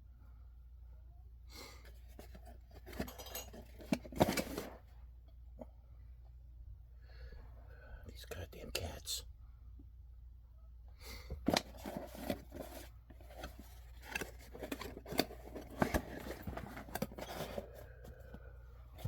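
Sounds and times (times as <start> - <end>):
packaging rustling and crinkling: 11.5 - 18.3.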